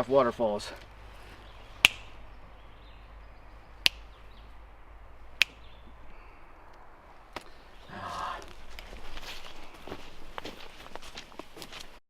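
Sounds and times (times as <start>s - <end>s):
faint outdoor background: 0.0s - 12.0s
sharp clicks: 1.8s - 2.3s, 3.8s - 4.3s, 5.3s - 5.7s.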